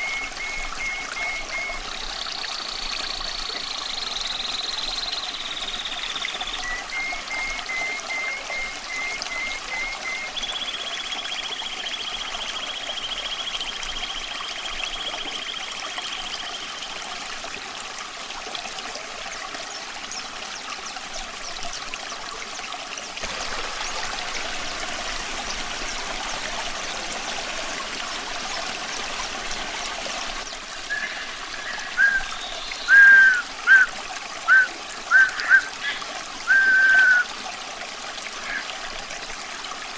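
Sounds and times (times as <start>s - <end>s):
nightingale singing: 0.0s - 12.1s, 30.8s - 37.3s
water trickling: 0.0s - 39.9s.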